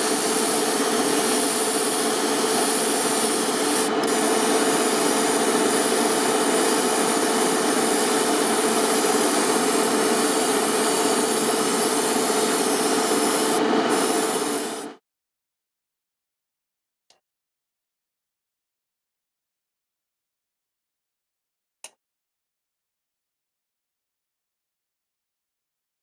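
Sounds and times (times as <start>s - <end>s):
power sander sanding: 0.0s - 14.9s.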